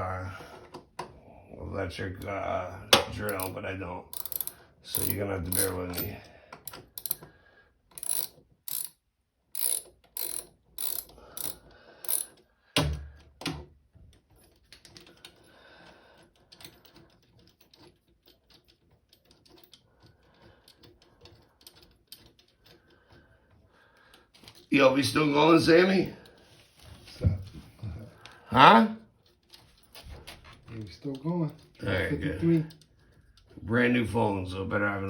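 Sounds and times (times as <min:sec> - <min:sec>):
hand ratchet clicking: 0:03.2 - 0:07.3, 0:07.9 - 0:12.5.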